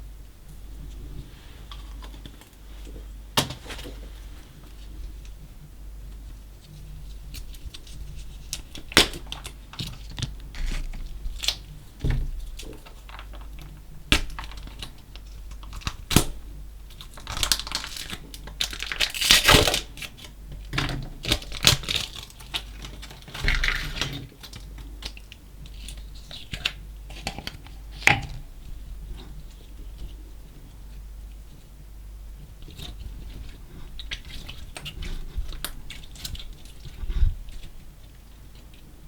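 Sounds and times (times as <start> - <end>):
slime crackling and squishing: 16.9 - 20.2.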